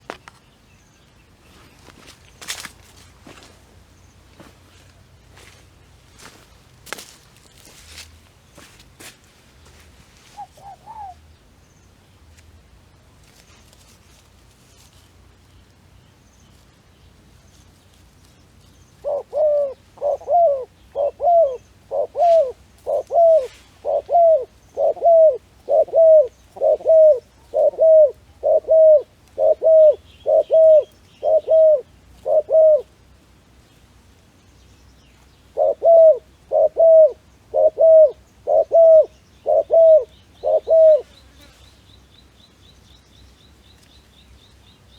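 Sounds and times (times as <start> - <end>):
dove cooing: 10.2 - 11.3, 19.0 - 33.0, 35.5 - 41.5.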